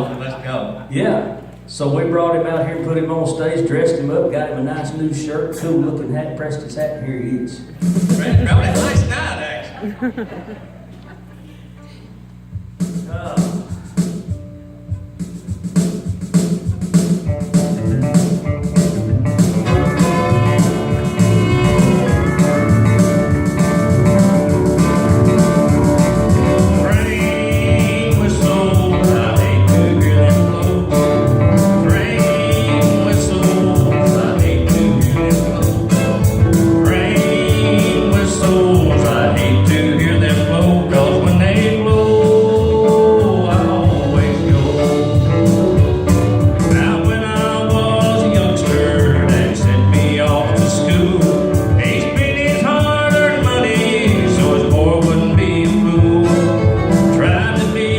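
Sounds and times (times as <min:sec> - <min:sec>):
man singing: 0:06.8 - 0:09.8, 0:19.6 - 0:57.9
live band with guitar and drums: 0:07.7 - 0:57.9.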